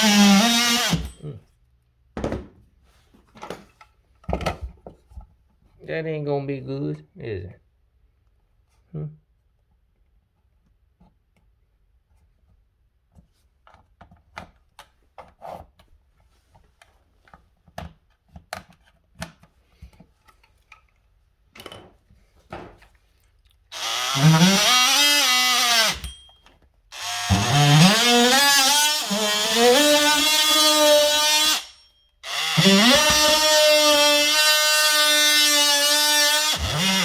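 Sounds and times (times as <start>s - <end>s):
oscillating multi-tool cutting: 0.0s - 1.2s, 23.7s - 37.0s.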